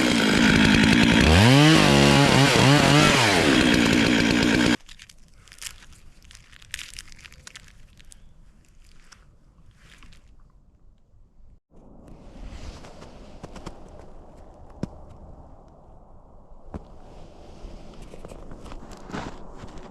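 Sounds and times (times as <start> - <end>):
chainsaw revving: 0.0 - 4.8
crunching and rustling: 4.8 - 11.0, 17.9 - 19.9.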